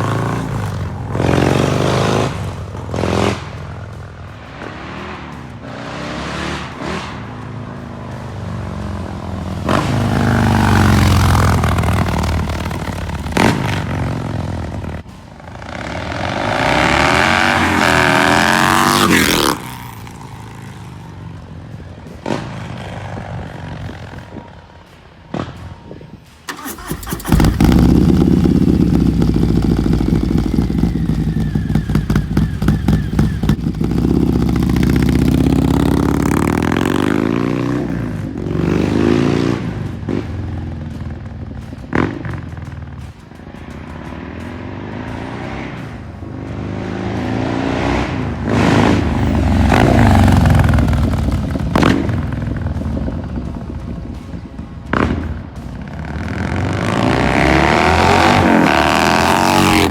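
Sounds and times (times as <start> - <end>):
motorcycle engine revving: 0.0 - 25.9, 26.5 - 59.9
motorcycle engine idling: 26.4 - 36.6.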